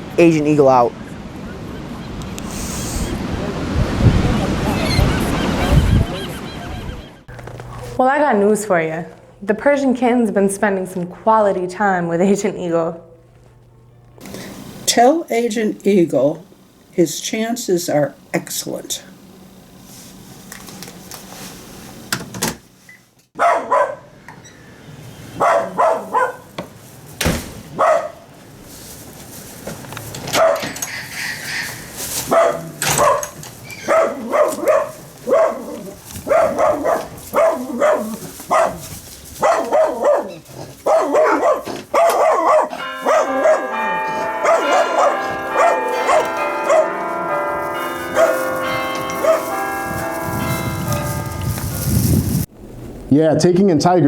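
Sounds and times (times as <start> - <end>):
dog barking: 23.4 - 24.2, 25.4 - 26.5, 27.7 - 28.3, 30.3 - 30.8, 32.2 - 47.1, 48.0 - 49.7
music with chiming bell-like notes: 42.8 - 52.2.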